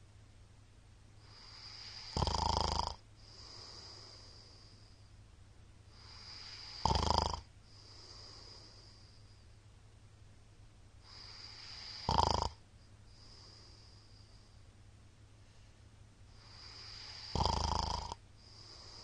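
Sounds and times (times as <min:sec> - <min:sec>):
man snoring loudly: 0:01.3 - 0:04.4, 0:06.0 - 0:08.6, 0:11.1 - 0:12.6, 0:16.4 - 0:19.0.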